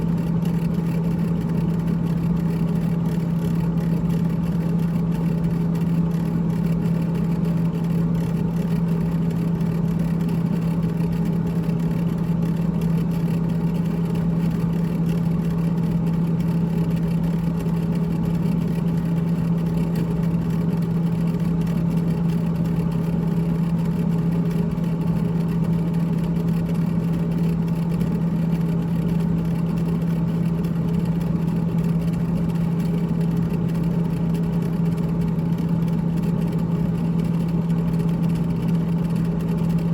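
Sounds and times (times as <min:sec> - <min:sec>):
refrigerator fan humming and rattling: 0:00.0 - 0:39.9.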